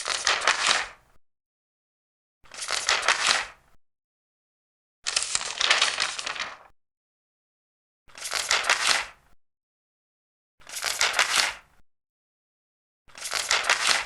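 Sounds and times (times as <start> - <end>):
paper pages turning: 0.0 - 1.0, 2.5 - 3.6, 5.1 - 6.7, 8.1 - 9.2, 10.6 - 11.6, 13.1 - 14.0.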